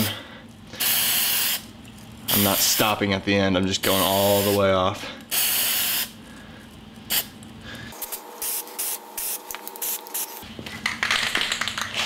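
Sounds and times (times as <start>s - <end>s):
aerosol spray can hissing: 0.8s - 1.7s, 5.3s - 6.1s.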